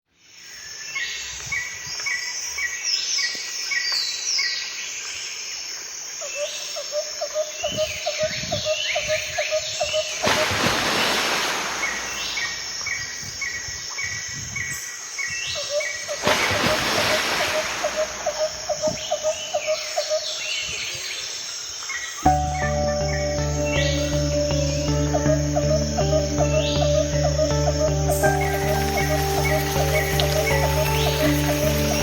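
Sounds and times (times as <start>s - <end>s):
burst of rushing noise: 10.2s - 12.9s
birds chirping and whistling: 22.3s - 32.0s.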